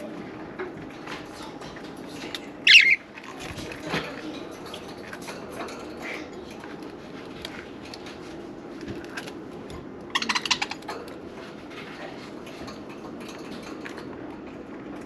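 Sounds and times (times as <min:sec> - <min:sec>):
budgerigars chirping: 0:02.6 - 0:03.0, 0:10.1 - 0:10.8.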